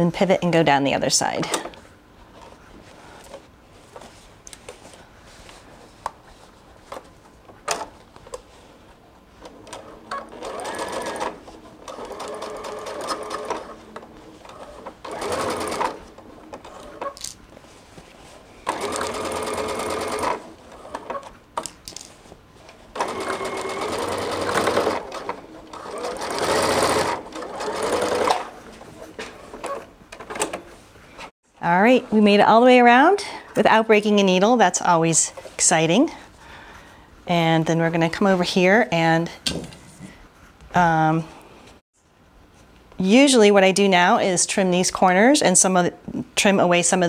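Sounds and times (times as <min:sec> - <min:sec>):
sewing machine stitching: 0:09.4 - 0:13.8, 0:14.4 - 0:17.2, 0:18.6 - 0:21.3, 0:23.0 - 0:28.5.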